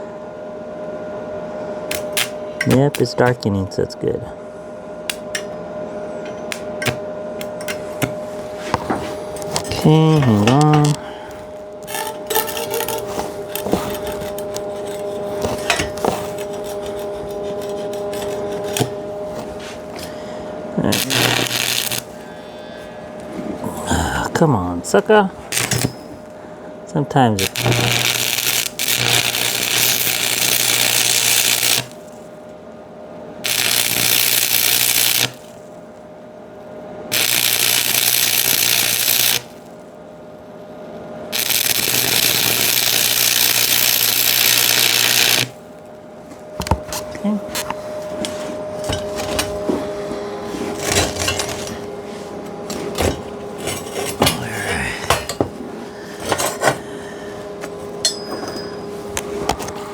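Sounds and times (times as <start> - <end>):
low hum: 0.0 - 29.8
arc welding crackling hiss: 1.9 - 3.2, 6.4 - 8.6, 9.2 - 20.1, 20.8 - 22.4, 25.5 - 26.4, 27.3 - 32.4, 33.4 - 36.0, 37.1 - 39.9, 41.3 - 45.8, 50.7 - 51.9.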